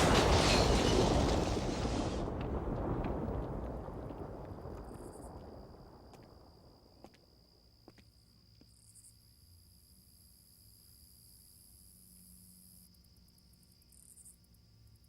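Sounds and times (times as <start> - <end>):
explosion rumble: 0.0 - 6.7
crickets chirping: 0.0 - 15.0.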